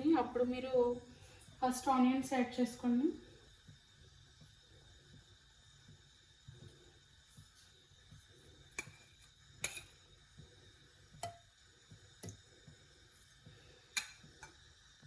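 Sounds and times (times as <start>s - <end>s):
faint steady hiss: 0.0s - 15.0s
oil ticking in heating pan: 0.0s - 15.0s.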